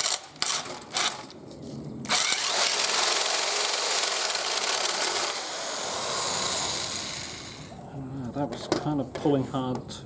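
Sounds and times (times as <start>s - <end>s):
electric drill boring into wood: 2.1s - 7.7s.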